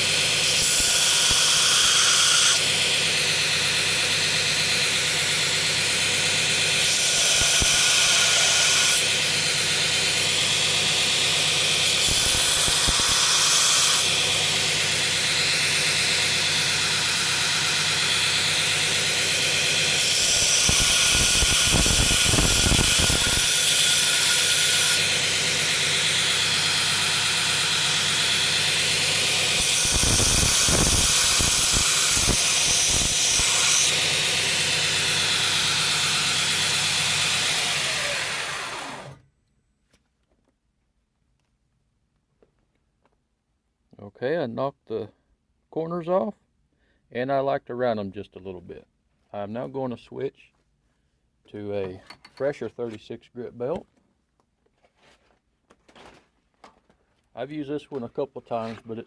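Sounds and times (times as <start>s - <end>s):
belt grinder running: 0.0s - 39.2s
blade grinding hiss: 0.5s - 2.8s, 6.8s - 9.2s, 10.9s - 18.5s, 20.0s - 36.5s.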